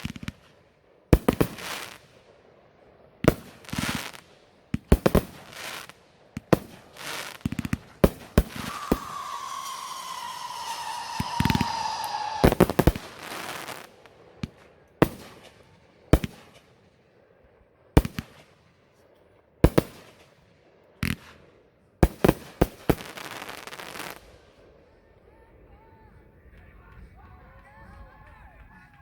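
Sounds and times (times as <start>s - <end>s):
firework bangs: 0.0s - 2.4s, 3.2s - 16.7s, 22.0s - 24.7s
firework whistle falling in pitch: 8.5s - 13.8s.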